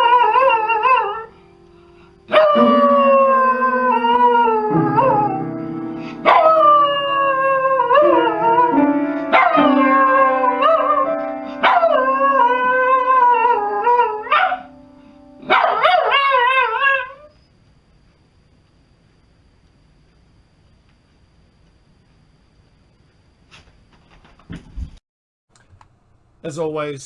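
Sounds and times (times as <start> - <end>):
dog howling: 0.0 - 1.3, 2.3 - 5.6, 6.2 - 14.7, 15.5 - 17.3
piano notes: 0.0 - 16.8.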